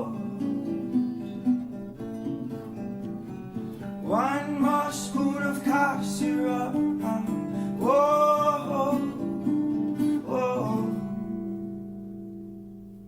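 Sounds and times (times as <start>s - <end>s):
guitar playing: 0.0s - 13.0s.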